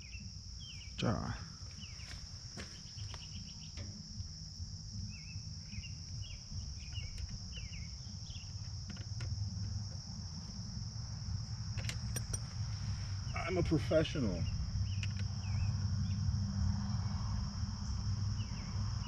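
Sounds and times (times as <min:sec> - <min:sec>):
crickets chirping: 0:00.0 - 0:19.0
low rumble: 0:09.4 - 0:19.0.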